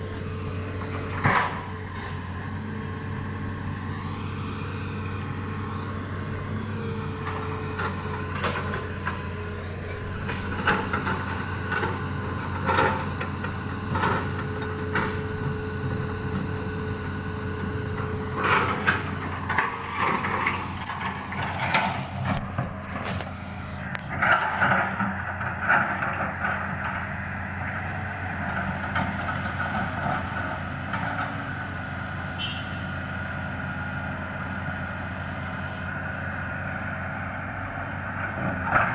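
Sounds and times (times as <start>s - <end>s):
steady whine: 0.0s - 24.3s
diesel engine running: 0.0s - 38.9s.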